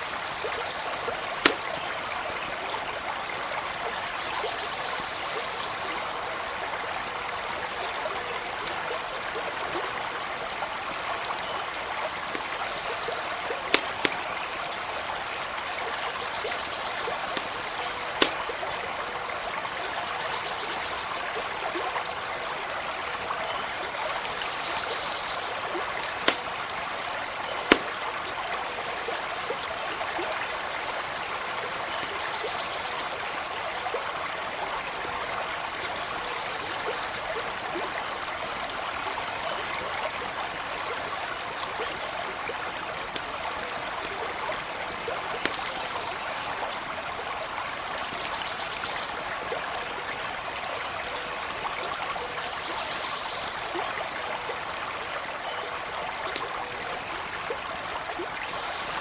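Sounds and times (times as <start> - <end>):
campfire crackling: 0.0 - 35.3, 36.0 - 59.0
brook running: 0.0 - 59.0
fire popping: 1.3 - 2.0, 12.3 - 15.4, 16.2 - 19.2, 25.8 - 26.8, 27.4 - 28.5, 44.6 - 46.0.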